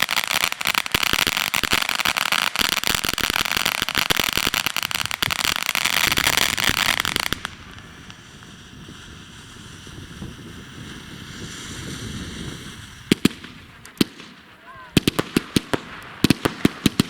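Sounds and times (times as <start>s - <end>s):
fireworks crackling and popping: 0.0s - 17.0s.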